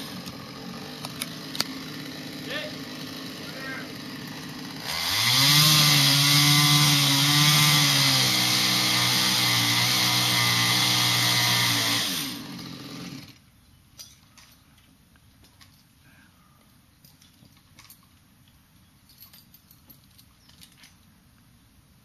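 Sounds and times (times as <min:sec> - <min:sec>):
chainsaw revving and cutting: 0:00.0 - 0:13.4.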